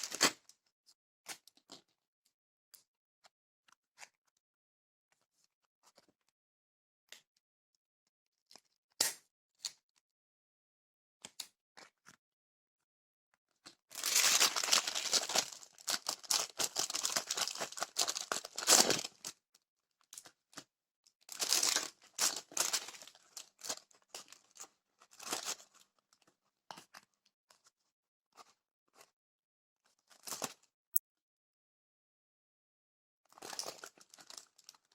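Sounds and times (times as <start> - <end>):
packaging crinkling and tearing: 13.9 - 19.3, 21.3 - 25.6, 33.4 - 34.9
packaging clicks and rustles: 13.9 - 19.4, 21.3 - 25.6, 33.3 - 34.9.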